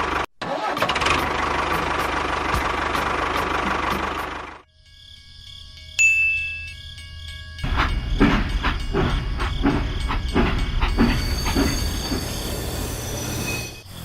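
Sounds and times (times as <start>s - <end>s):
machine chugging with knocks: 7.6s - 12.8s.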